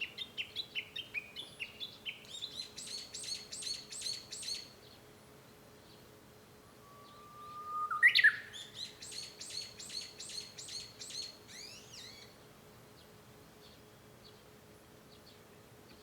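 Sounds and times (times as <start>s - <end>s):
bird whistling song: 6.8s - 12.3s.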